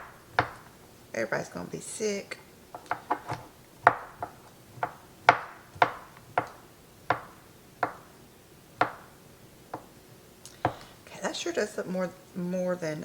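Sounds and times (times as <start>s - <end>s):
knife chopping on cutting board: 0.0s - 0.8s, 2.8s - 8.2s, 8.8s - 9.9s, 10.7s - 10.9s.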